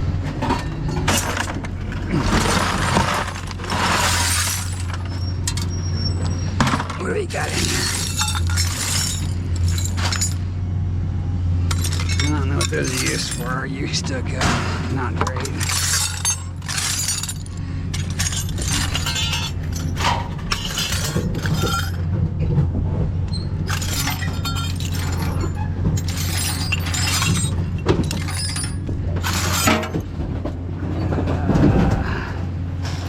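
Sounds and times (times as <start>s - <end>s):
low engine hum: 0.0s - 33.0s
scrap metal clanking: 0.2s - 10.4s, 11.7s - 22.7s, 23.3s - 32.1s.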